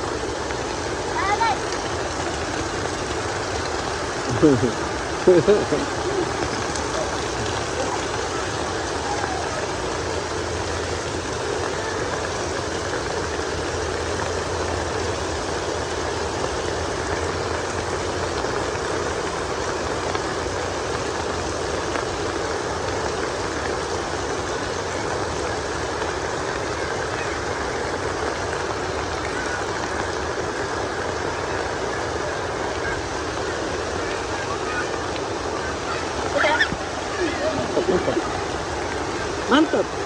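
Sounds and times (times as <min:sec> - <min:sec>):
heavy rain: 0:00.0 - 0:40.0.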